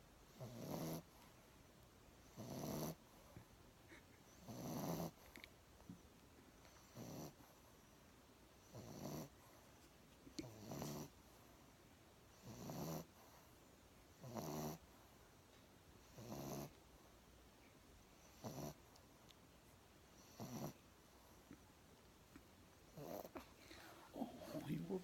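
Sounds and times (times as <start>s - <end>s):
pet snoring: 0.3s - 1.2s, 2.2s - 3.0s, 4.3s - 5.3s, 6.7s - 7.5s, 8.6s - 9.4s, 10.4s - 11.2s, 12.4s - 13.4s, 14.2s - 14.9s, 16.0s - 16.8s, 18.2s - 18.8s, 20.2s - 20.8s, 22.9s - 25.0s.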